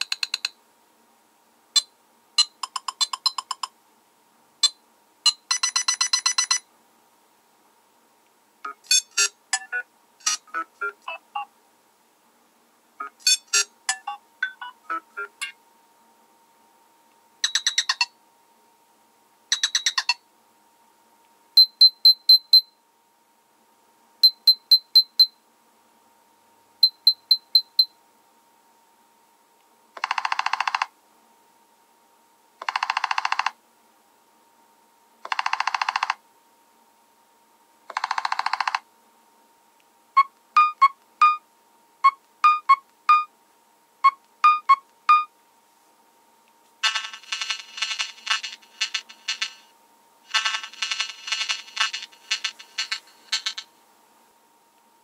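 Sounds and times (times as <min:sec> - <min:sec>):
clicky electronic beeps: 0:08.7 - 0:11.5, 0:17.4 - 0:18.1, 0:19.5 - 0:20.2
plucked electronic beeps: 0:08.7 - 0:11.5, 0:13.0 - 0:15.5
electronic buzzing bursts: 0:46.8 - 0:49.7, 0:50.3 - 0:53.7.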